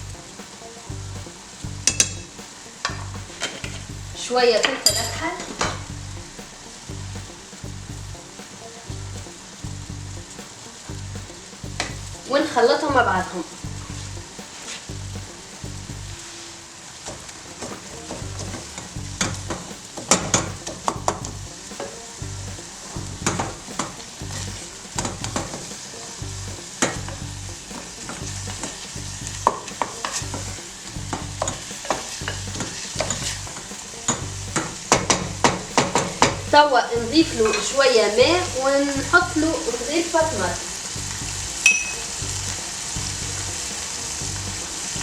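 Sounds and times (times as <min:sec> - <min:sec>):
meat sizzling in a pan: 0:16.3 - 0:45.0
utensil scraping a pan: 0:27.6 - 0:36.6.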